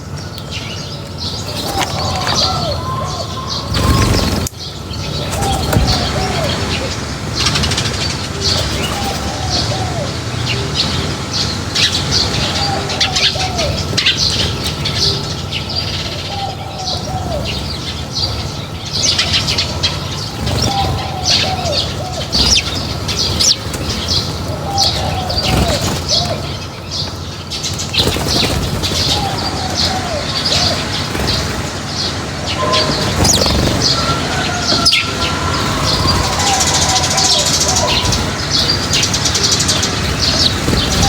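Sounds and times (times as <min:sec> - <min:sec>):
low falling bird call: 0:00.0 - 0:41.0
small birds chirping: 0:00.0 - 0:41.0
wings fluttering: 0:00.0 - 0:41.0
steady low rumble: 0:21.2 - 0:41.0.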